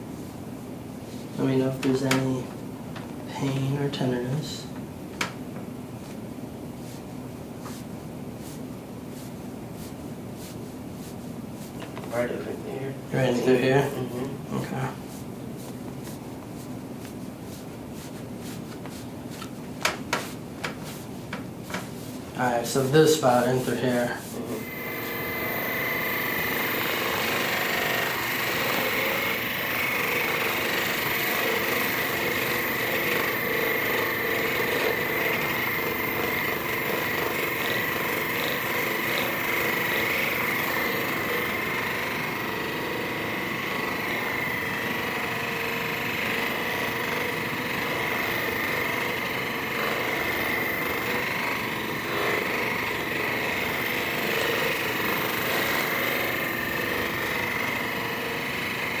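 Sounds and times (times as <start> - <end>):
percussion massager buzzing: 22.5 - 59.0.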